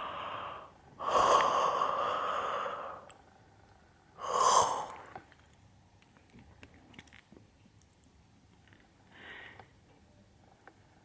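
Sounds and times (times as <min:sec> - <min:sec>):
breathy open-mouthed breaths: 0:00.0 - 0:05.3, 0:09.1 - 0:09.7.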